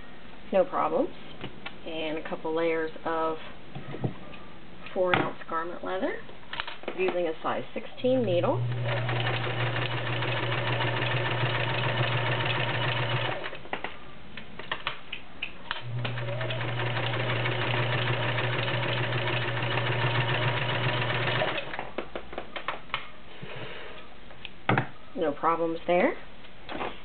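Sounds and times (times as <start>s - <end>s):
sewing machine running: 8.6s - 13.6s, 15.8s - 21.8s.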